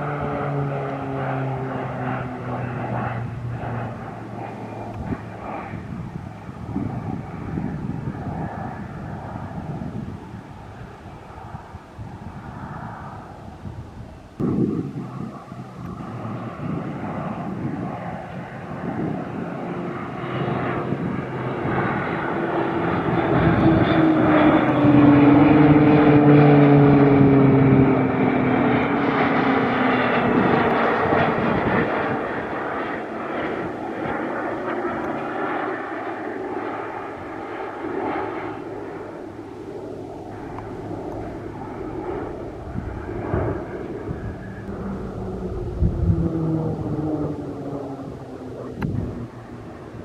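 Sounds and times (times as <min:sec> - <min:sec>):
propeller aircraft flying past: 0:00.0 - 0:50.0.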